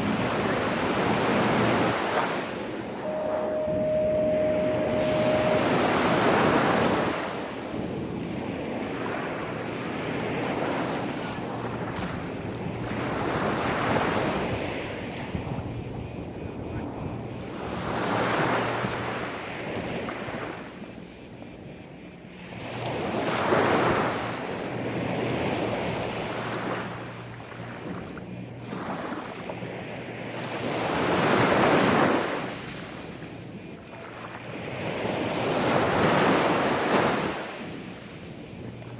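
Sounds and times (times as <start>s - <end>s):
sea waves breaking on a beach: 0.0s - 38.9s.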